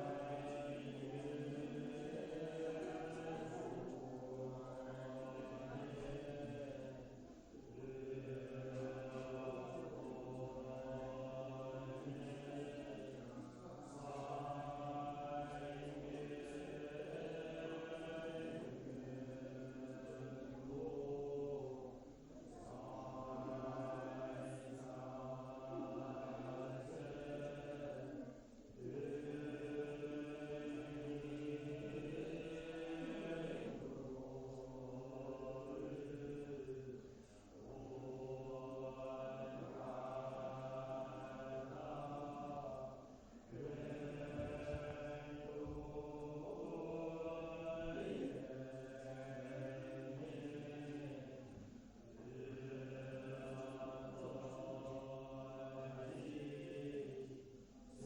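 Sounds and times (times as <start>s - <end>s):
voices chanting in held tones: 0.0s - 58.0s.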